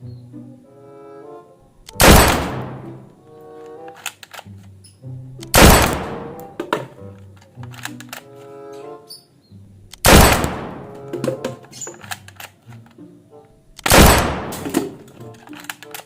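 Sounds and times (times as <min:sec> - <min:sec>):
background music: 0:00.0 - 0:16.0
loud gunshots: 0:02.0 - 0:03.0, 0:05.5 - 0:06.4, 0:10.0 - 0:11.0, 0:13.8 - 0:15.0.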